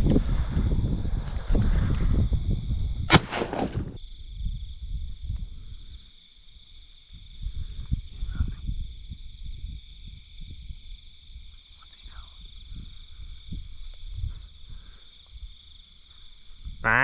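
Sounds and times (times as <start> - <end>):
low wind rumble: 0.0 - 5.9, 7.1 - 15.6
shotgun shot: 3.1 - 4.0.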